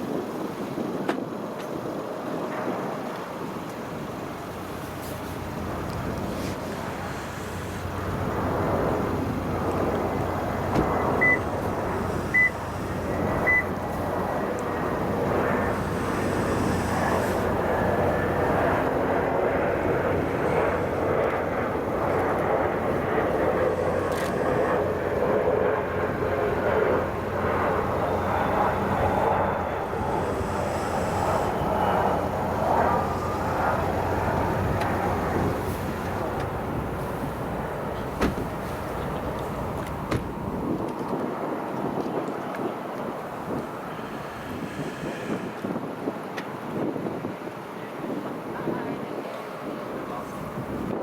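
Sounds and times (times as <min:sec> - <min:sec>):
jet engines rushing in cabin: 0:00.0 - 0:51.0
short high beeps: 0:11.2 - 0:11.4.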